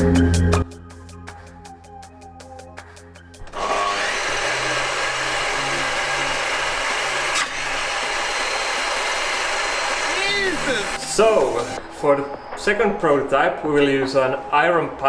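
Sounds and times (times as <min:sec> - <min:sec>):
table saw whirring: 0:03.6 - 0:11.8.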